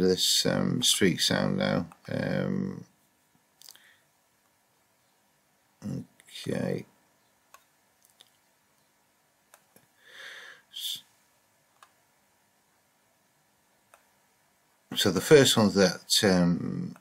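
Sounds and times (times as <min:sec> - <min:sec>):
computer mouse clicks: 0:07.5 - 0:08.9, 0:09.5 - 0:09.9, 0:11.8 - 0:12.0, 0:13.9 - 0:14.1.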